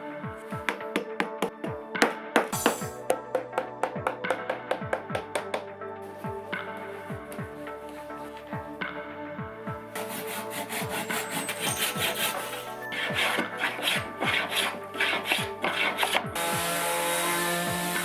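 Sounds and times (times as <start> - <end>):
background music: 0.0 - 18.0
hand tool sawing wood: 10.0 - 18.0.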